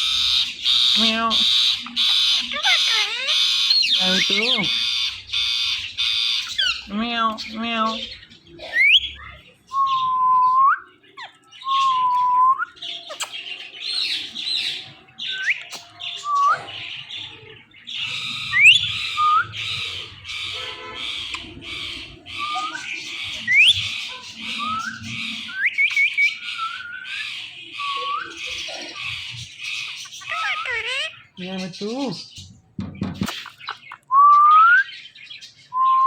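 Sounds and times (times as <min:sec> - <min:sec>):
parrot whistling: 0:00.0 - 0:06.8, 0:18.2 - 0:19.6, 0:22.3 - 0:23.9, 0:24.5 - 0:28.4
parrots squawking: 0:00.0 - 0:09.5, 0:12.8 - 0:34.1.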